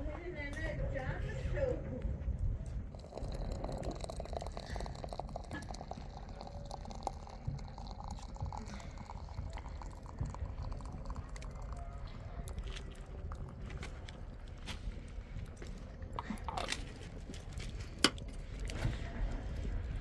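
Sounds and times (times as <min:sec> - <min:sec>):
liquid pouring and dripping: 0:02.8 - 0:19.4.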